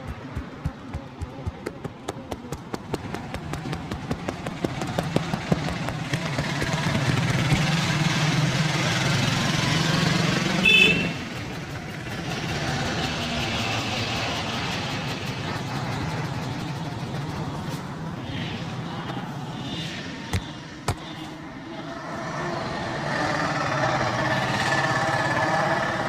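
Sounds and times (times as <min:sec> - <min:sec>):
rhythmic hand slapping: 0:00.0 - 0:07.8
street traffic: 0:00.0 - 0:26.0
vehicle engine: 0:00.0 - 0:26.0
horn blast: 0:10.6 - 0:11.2.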